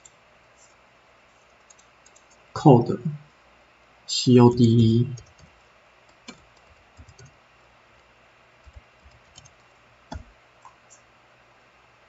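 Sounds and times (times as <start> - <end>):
computer keyboard clicks: 1.5 - 2.4, 5.2 - 7.4, 8.6 - 10.8.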